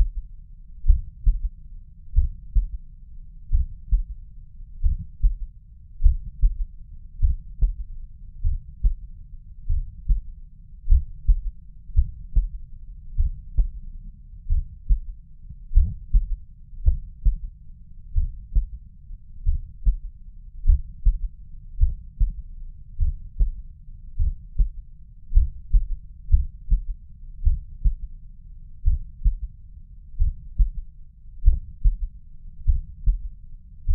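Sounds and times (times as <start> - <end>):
faint extra heart thud: 0.0 - 2.8, 3.5 - 4.1, 4.8 - 5.4, 6.0 - 9.0, 9.7 - 10.3, 10.9 - 12.6, 13.2 - 13.8, 14.5 - 17.5, 18.1 - 18.8, 19.4 - 22.4, 23.0 - 23.6, 24.2 - 24.7, 25.3 - 28.1, 28.8 - 29.5, 30.2 - 30.8, 31.4 - 33.3
heartbeat thumps: 0.0 - 2.8, 3.5 - 4.2, 4.8 - 9.0, 9.6 - 13.8, 14.4 - 17.5, 18.1 - 18.8, 19.4 - 22.4, 23.0 - 28.1, 28.8 - 29.5, 30.2 - 33.9.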